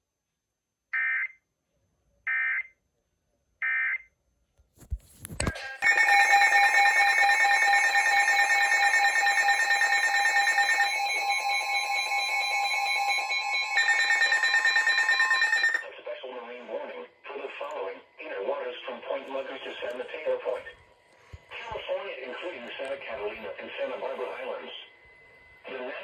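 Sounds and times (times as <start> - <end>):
steady electronic alert tone: 5.6 - 15.8.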